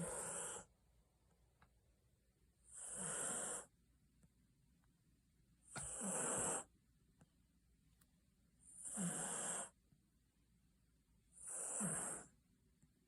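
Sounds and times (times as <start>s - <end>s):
dog snoring: 0.0s - 0.7s, 2.7s - 3.7s, 5.7s - 6.7s, 8.7s - 9.8s, 11.4s - 12.4s.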